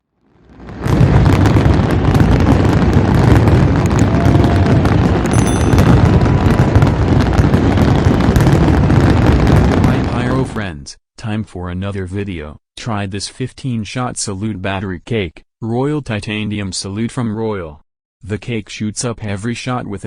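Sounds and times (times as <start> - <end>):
fireworks banging and crackling: 0.4 - 10.5.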